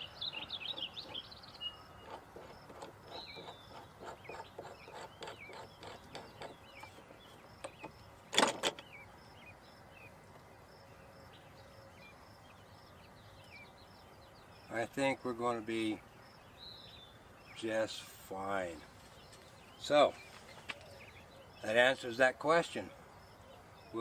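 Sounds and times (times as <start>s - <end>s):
birds chirping: 0.0s - 24.0s
plastic vise clicking: 2.0s - 8.9s.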